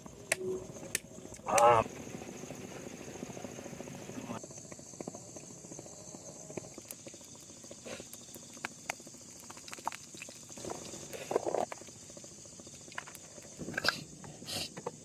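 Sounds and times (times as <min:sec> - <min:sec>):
high insect drone: 0:00.0 - 0:15.0
chewing: 0:06.5 - 0:11.9.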